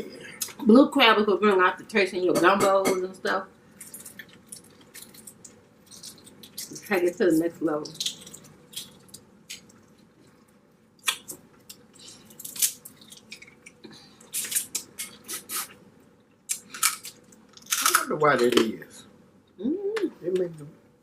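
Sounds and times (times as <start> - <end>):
crab shell cracking: 3.8 - 6.8, 7.9 - 9.8, 11.0 - 15.2, 16.5 - 18.7.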